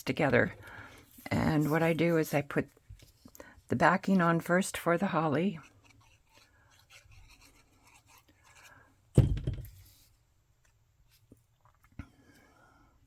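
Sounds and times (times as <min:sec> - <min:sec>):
dull thump on table: 0:09.2 - 0:09.8.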